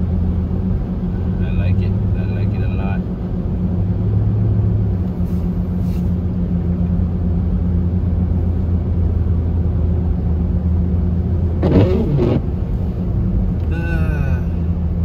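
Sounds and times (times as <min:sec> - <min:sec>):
car engine and tyres drone: 0:00.0 - 0:15.0.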